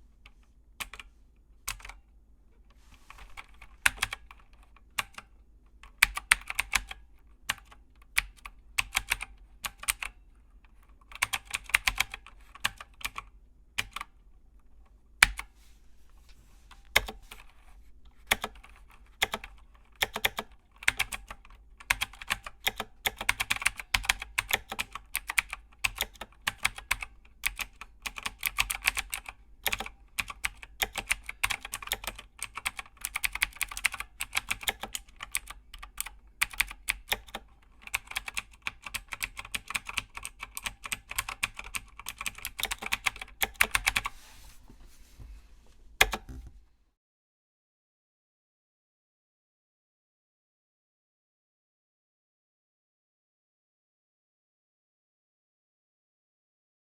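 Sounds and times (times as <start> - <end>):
rapid typing on keys: 3.4 - 5.2, 5.9 - 10.1, 11.1 - 13.2, 18.3 - 44.1.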